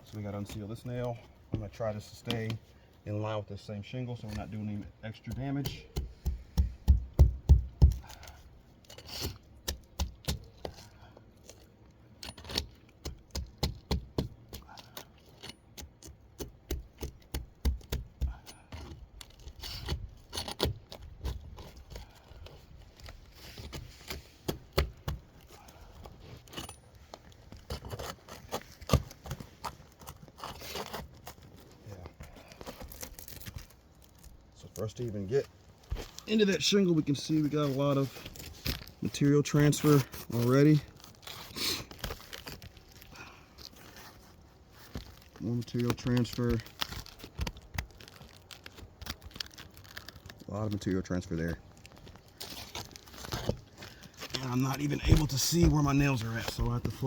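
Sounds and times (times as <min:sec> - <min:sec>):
hand tool tapping and scraping shingles: 0:00.0 - 0:02.6, 0:04.2 - 0:33.6, 0:52.4 - 0:57.0.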